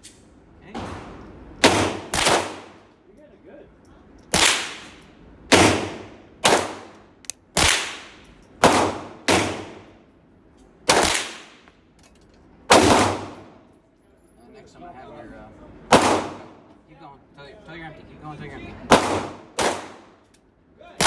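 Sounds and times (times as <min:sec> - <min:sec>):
pistol shots: 0:01.6 - 0:02.8, 0:04.3 - 0:07.0, 0:07.6 - 0:09.9, 0:10.9 - 0:11.6, 0:12.7 - 0:13.6, 0:15.9 - 0:16.7, 0:18.9 - 0:20.2.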